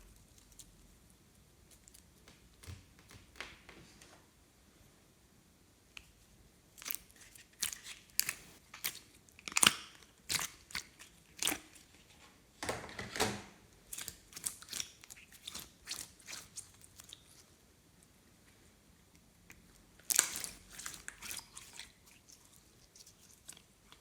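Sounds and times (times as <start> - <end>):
hands squishing slime: 6.7 - 12.1, 13.8 - 17.6, 19.5 - 24.0.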